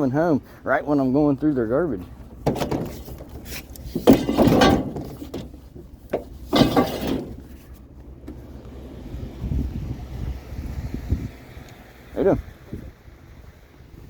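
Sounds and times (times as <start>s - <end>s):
low vehicle hum: 0.0s - 14.0s
junk clattering: 2.0s - 8.6s
sharp knocks: 2.3s - 3.4s.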